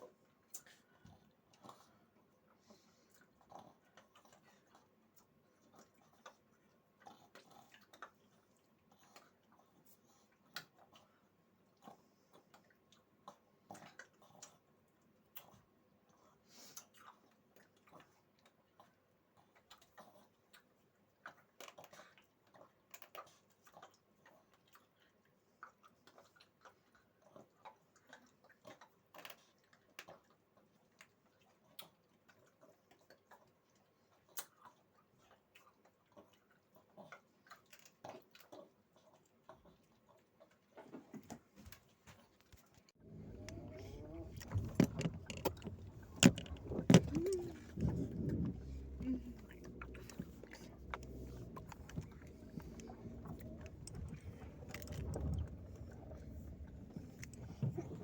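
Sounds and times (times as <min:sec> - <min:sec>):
faint small clicks and ticks: 0:16.7 - 0:25.2, 0:26.0 - 0:34.8, 0:35.6 - 0:38.7, 0:41.3 - 0:58.0.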